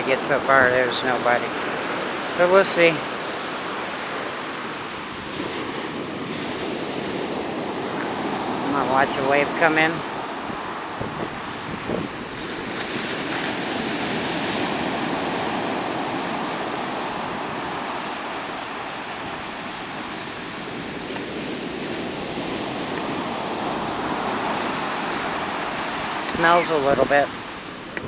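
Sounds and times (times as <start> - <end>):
ocean surf breaking: 0.0 - 28.0.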